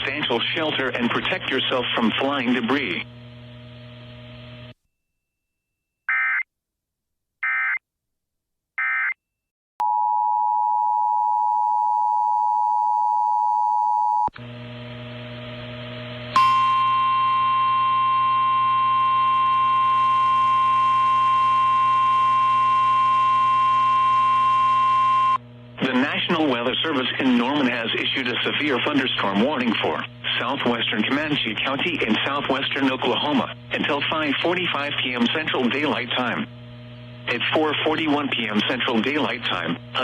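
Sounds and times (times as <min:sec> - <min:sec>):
radio static: 0:00.0 - 0:03.1, 0:25.8 - 0:36.5, 0:37.3 - 0:40.0
radio hum: 0:00.0 - 0:03.2, 0:25.8 - 0:36.6, 0:37.2 - 0:40.0
steady warning alarm tone: 0:16.4 - 0:26.1.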